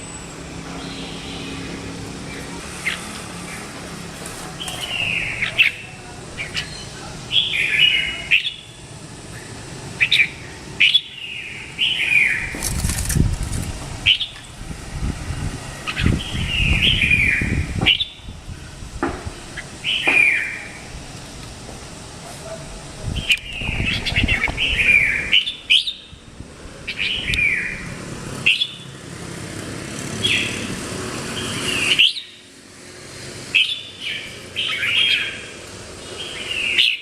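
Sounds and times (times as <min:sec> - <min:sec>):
bird singing chirpy phrases: 0:00.7 - 0:03.7, 0:04.5 - 0:12.6, 0:23.1 - 0:26.2, 0:26.8 - 0:28.9, 0:33.6 - 0:37.0.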